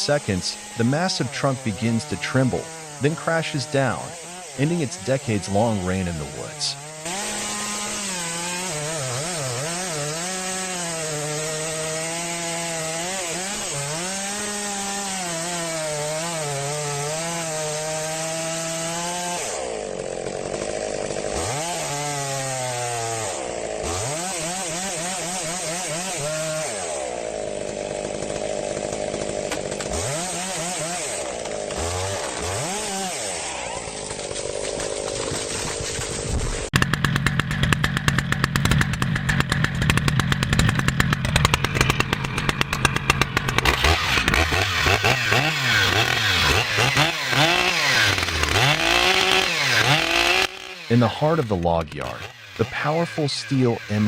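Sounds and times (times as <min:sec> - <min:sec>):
chainsaw cutting wood: 0:00.0 - 0:54.0
chainsaw revving: 0:00.0 - 0:54.0.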